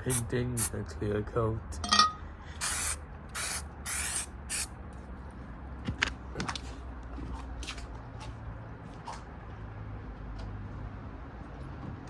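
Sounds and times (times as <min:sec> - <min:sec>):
spray can hissing: 0:00.0 - 0:00.7, 0:02.6 - 0:04.7.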